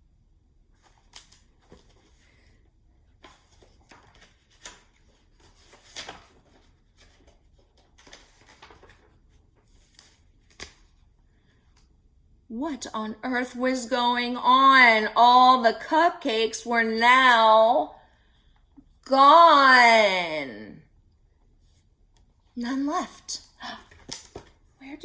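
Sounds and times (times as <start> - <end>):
paper pages rustling: 0.8 - 11.8, 23.8 - 24.8.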